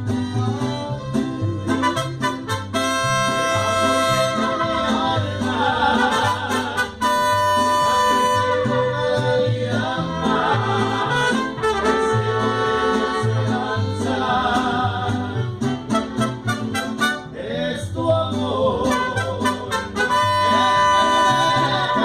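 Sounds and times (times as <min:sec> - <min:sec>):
mariachi band playing: 0:00.0 - 0:22.0
trumpets holding notes: 0:01.7 - 0:05.2, 0:06.0 - 0:09.1, 0:10.6 - 0:13.7, 0:15.6 - 0:17.4, 0:18.9 - 0:22.0.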